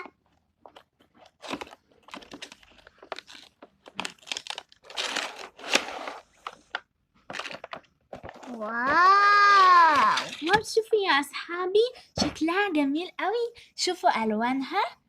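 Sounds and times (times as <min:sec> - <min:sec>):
packaging being torn and crinkled: 0:00.7 - 0:08.7.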